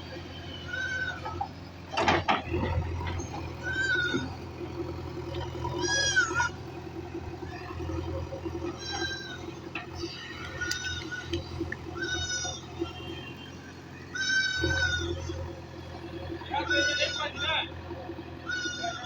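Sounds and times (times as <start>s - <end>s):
diesel engine running: 0.0s - 19.0s
animal calling: 5.5s - 6.7s, 8.5s - 19.0s.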